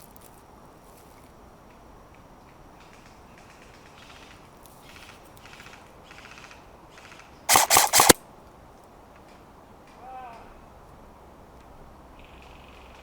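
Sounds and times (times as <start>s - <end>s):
airsoft gunfire cracks: 7.5s - 8.2s.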